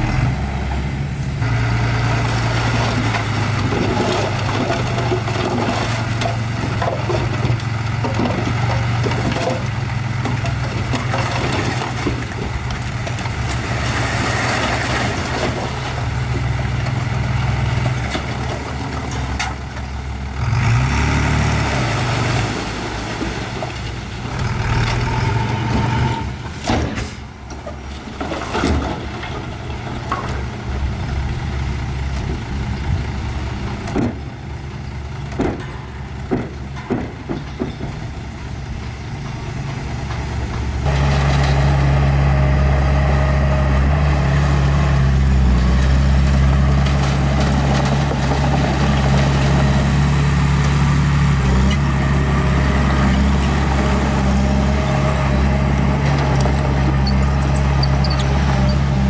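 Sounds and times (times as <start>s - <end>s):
bulldozer diesel engine running: 0.0s - 59.0s
rock scraping and clattering: 2.4s - 17.0s, 43.7s - 59.0s.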